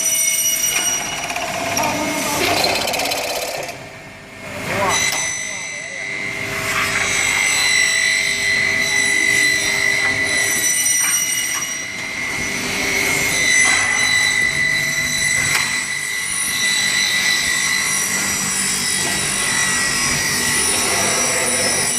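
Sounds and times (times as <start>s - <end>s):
drilling machine high whine: 0.0s - 21.9s
sharp machine clicks: 0.7s - 3.8s.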